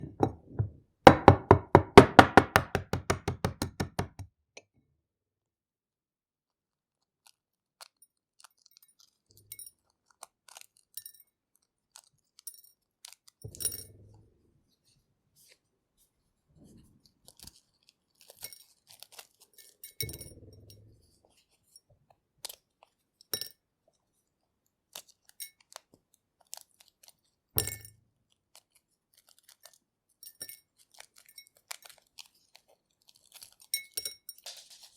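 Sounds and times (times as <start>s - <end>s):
egg tapping on glass bowl: 0.0s - 4.3s.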